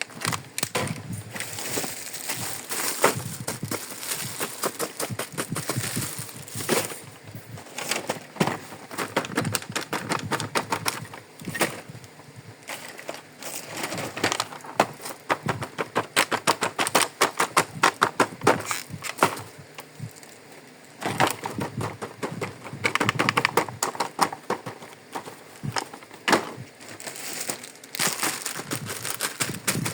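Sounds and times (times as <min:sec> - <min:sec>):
plastic toy pieces clicking: 0:22.2 - 0:24.6.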